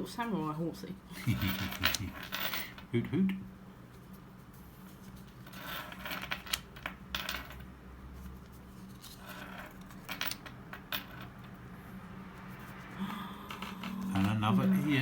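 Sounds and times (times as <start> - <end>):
steady low hum: 11.5 - 15.0.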